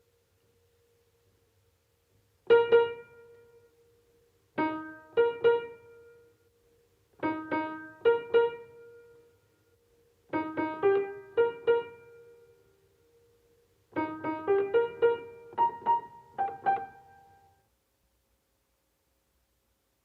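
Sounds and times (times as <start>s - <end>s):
piano notes ringing: 10.3s - 12.6s, 14.0s - 17.6s.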